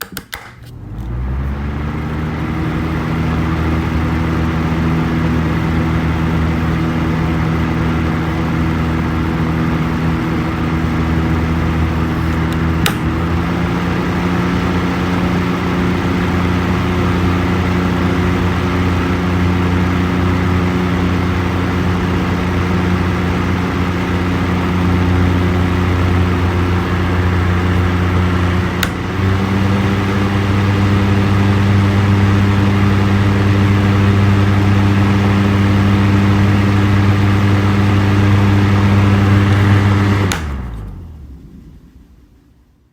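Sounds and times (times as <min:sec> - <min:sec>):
electric fan motor whirring: 0:00.6 - 0:41.4
fan switch click: 0:12.1 - 0:15.8, 0:27.6 - 0:29.7, 0:38.9 - 0:41.0.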